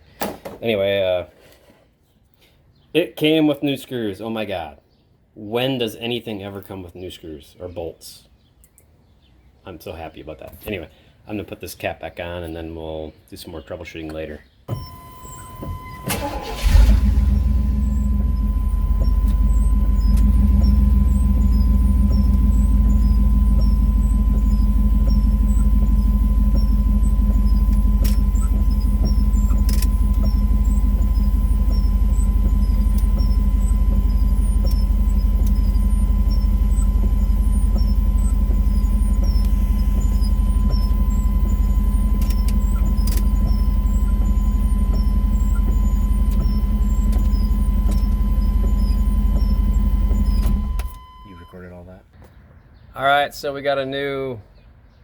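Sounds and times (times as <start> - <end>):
truck engine starting and idling: 14.7 - 51.4.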